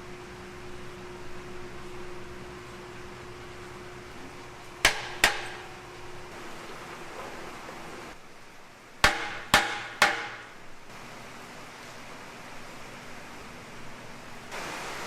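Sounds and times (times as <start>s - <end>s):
steady machine hum: 0.0s - 15.0s
sharp knocks: 4.8s - 5.8s, 9.0s - 10.6s.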